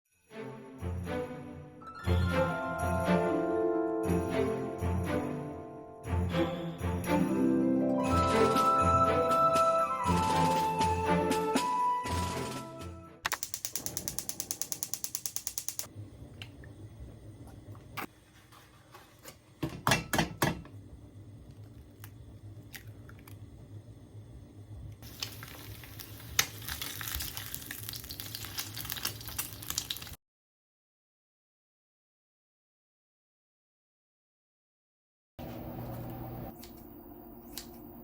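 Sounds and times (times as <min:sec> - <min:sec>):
rapid mechanical clicking: 0:13.3 - 0:15.9.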